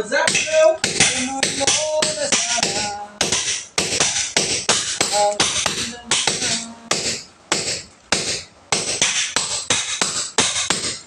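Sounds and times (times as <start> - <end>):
hammer striking chisel on concrete: 0.3 - 9.8.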